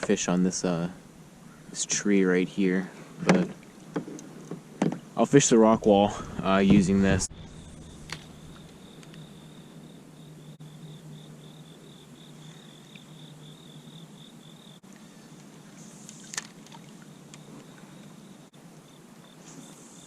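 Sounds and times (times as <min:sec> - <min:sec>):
crickets trilling: 0:07.1 - 0:20.0.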